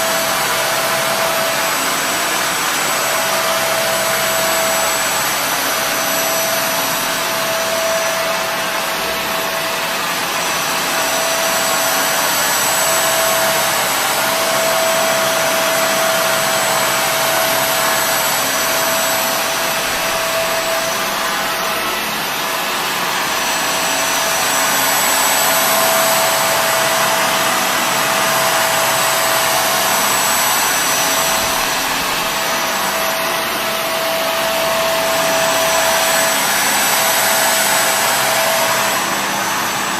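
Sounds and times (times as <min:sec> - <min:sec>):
high whine: 0:00.0 - 0:39.9
vacuum cleaner running: 0:00.0 - 0:39.9.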